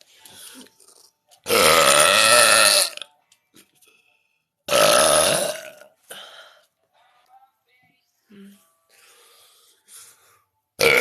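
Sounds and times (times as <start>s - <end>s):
woman burping loudly: 1.4s - 3.1s, 4.7s - 5.9s, 10.8s - 11.0s.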